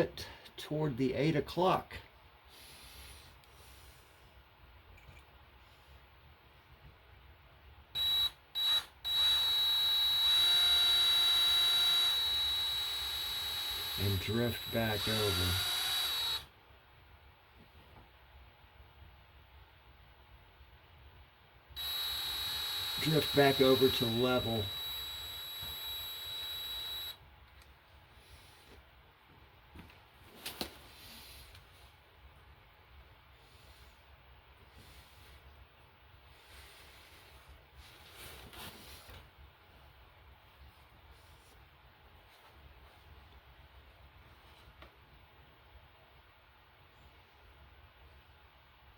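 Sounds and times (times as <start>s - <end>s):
electric drill whining: 8.0s - 16.5s, 21.8s - 27.2s.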